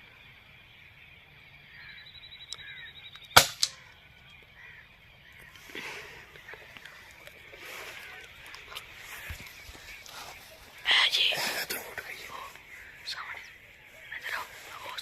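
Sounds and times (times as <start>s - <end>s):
airgun shot crack: 3.4s - 3.8s.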